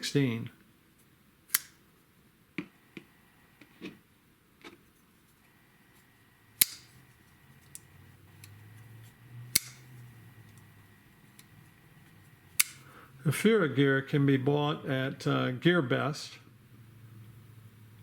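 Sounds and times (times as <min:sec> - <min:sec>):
folding knives snapping open and shut: 0:01.5 - 0:01.8, 0:06.6 - 0:07.0, 0:09.5 - 0:09.8, 0:12.6 - 0:12.8.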